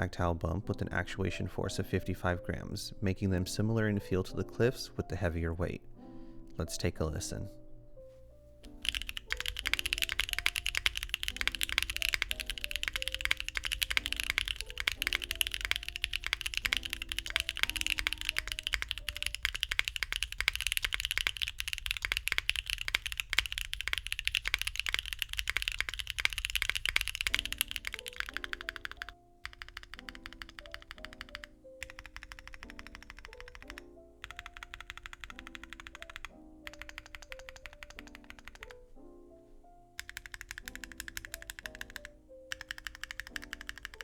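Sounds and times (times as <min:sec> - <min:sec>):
fast typing on mechanical keyboard: 0:08.6 - 0:38.8, 0:40.0 - 0:44.0.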